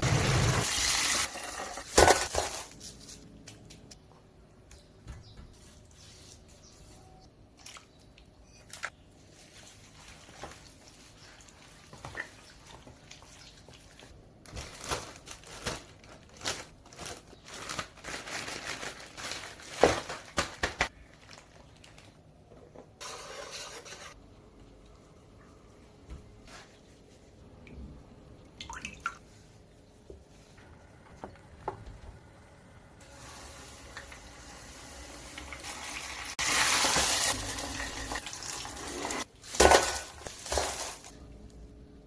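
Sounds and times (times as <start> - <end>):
rustling and scraping: 39.2 - 41.2.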